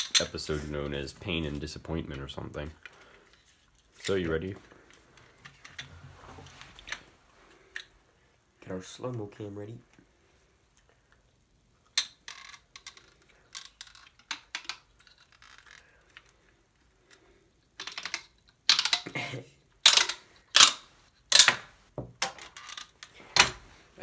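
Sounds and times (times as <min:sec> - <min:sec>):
paper crimper clicks and rustling: 0:19.8 - 0:21.7.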